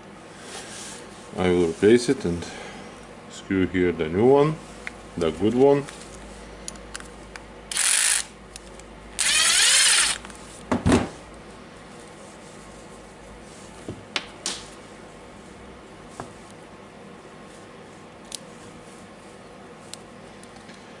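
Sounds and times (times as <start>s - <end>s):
cordless screwdriver running: 7.7s - 8.3s, 9.2s - 10.2s.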